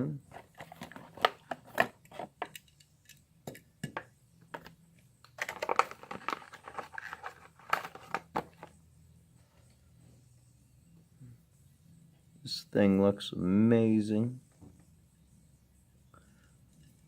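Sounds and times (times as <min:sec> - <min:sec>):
crinkling plastic: 0:05.2 - 0:08.7.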